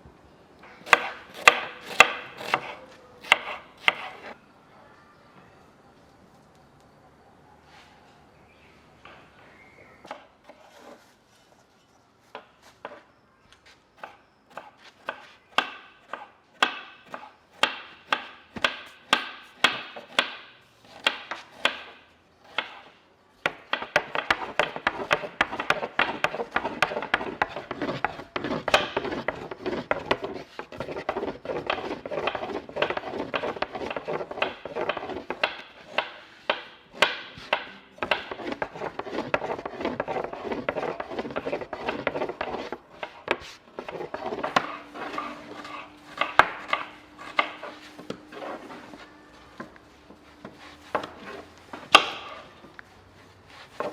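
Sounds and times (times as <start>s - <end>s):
chopping strokes: 0.8s - 4.4s, 14.0s - 48.9s.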